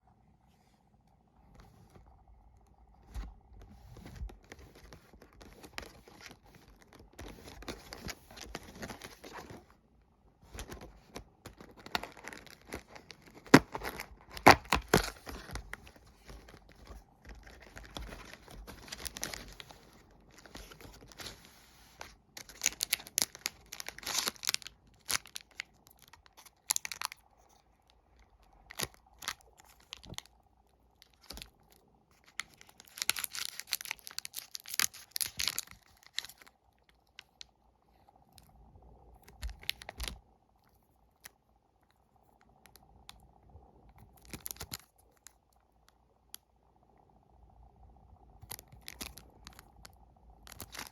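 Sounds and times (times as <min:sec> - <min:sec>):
wrapper tearing and crinkling: 0:11.5 - 0:21.4, 0:22.4 - 0:27.3, 0:31.0 - 0:31.5, 0:32.2 - 0:36.5, 0:44.2 - 0:44.9, 0:48.5 - 0:49.7, 0:50.4 - 0:50.9.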